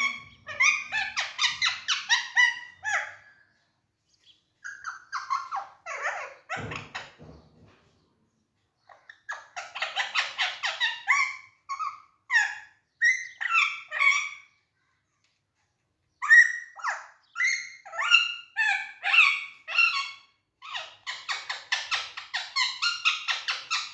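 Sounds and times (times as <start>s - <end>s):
parakeet chattering calls: 0.0s - 3.3s
parakeet squawks: 0.0s - 3.3s.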